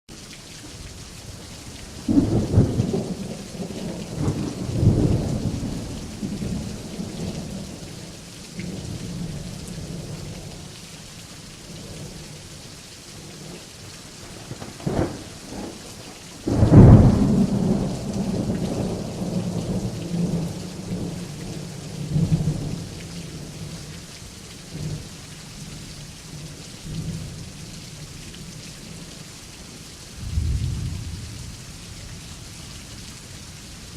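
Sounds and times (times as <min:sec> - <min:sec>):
steady rain: 0:00.1 - 0:33.9
thunder rumbling: 0:02.1 - 0:07.7, 0:14.2 - 0:15.8, 0:16.4 - 0:22.8, 0:30.2 - 0:32.2
loud thunderclap: 0:16.5 - 0:21.1, 0:30.2 - 0:31.5.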